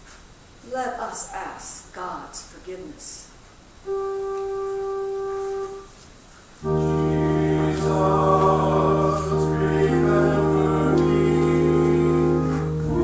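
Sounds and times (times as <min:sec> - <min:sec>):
church organ: 0:03.8 - 0:13.0
voices singing: 0:06.6 - 0:13.0.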